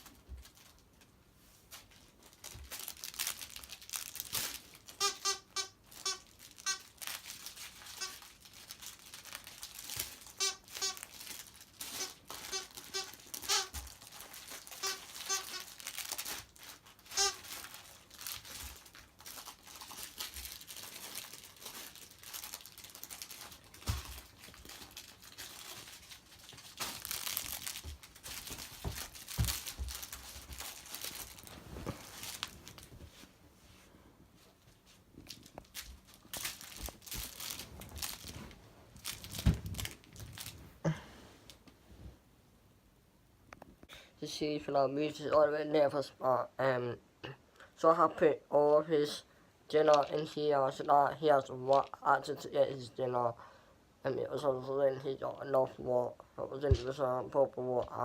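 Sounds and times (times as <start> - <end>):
crinkling and tearing: 0.0 - 33.3, 35.2 - 40.8
squeaky toy squeaking: 4.9 - 7.0, 7.8 - 8.3, 10.2 - 13.9, 14.6 - 16.0, 17.1 - 17.7.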